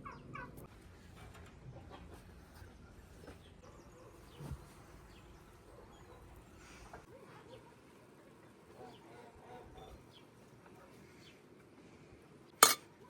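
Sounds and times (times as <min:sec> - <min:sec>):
chickens clucking: 0:00.0 - 0:00.7.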